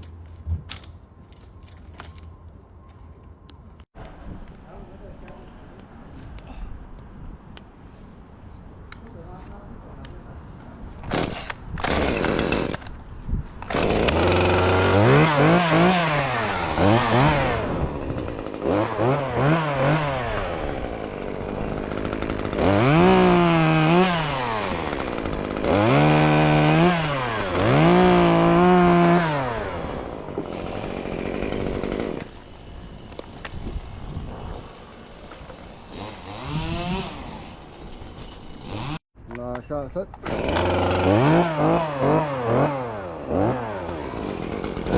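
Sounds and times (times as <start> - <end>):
chainsaw engine revving: 11.1 - 12.9, 13.7 - 32.3, 35.9 - 39.0, 40.2 - 44.9.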